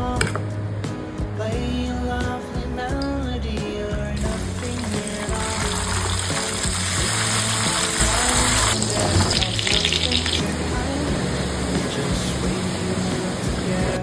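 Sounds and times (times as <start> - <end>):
background music: 0.0 - 14.0
food sizzling in hot oil: 4.2 - 14.0.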